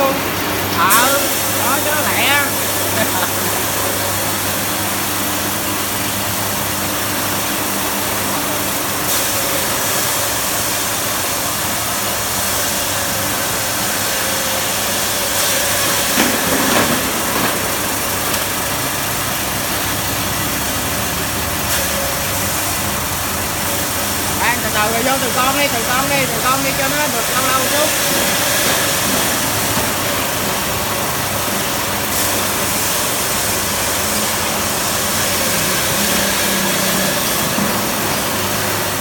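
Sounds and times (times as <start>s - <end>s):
machine chopping fish: 12.5s - 39.0s.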